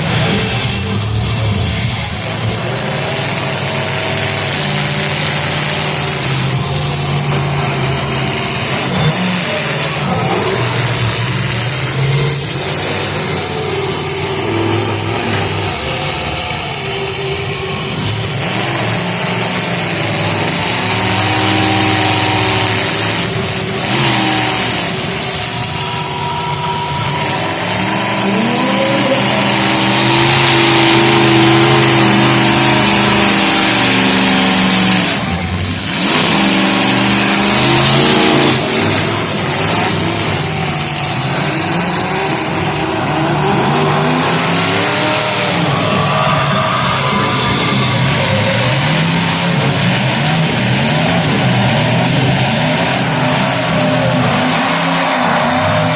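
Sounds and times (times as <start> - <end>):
car engines revving and idling: 0.0 - 55.9.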